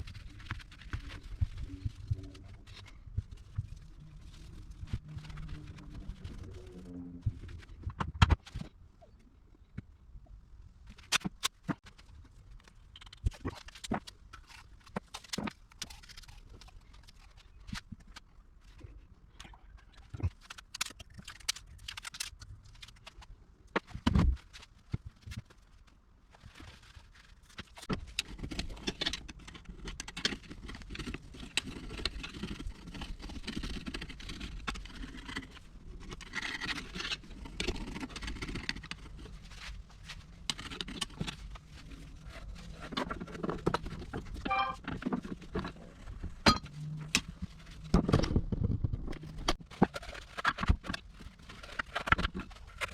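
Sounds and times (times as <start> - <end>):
low steady rumble: 0.0 - 8.1.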